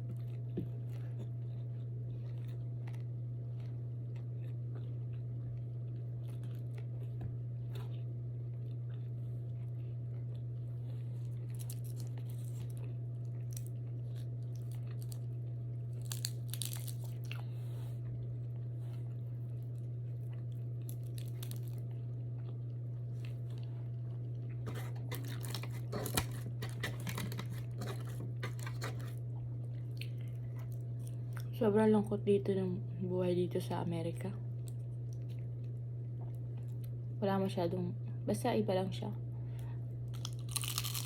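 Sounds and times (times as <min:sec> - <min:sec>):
person chewing crunchy food: 0:00.0 - 0:31.5, 0:40.1 - 0:41.0
steady low hum: 0:00.0 - 0:41.0.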